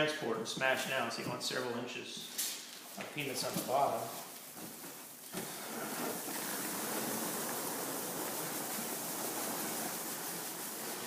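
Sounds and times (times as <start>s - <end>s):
packing peanuts poured into box: 3.4s - 11.0s.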